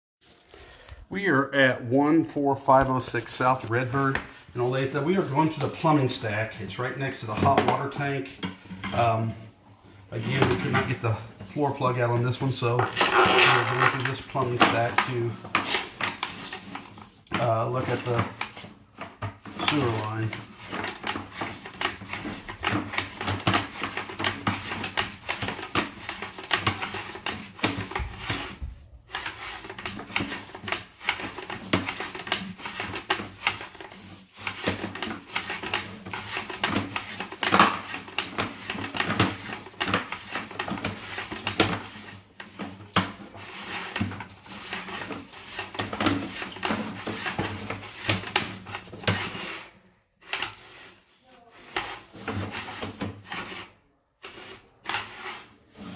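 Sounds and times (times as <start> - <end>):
cable clattering through pipe: 10.2 - 49.4.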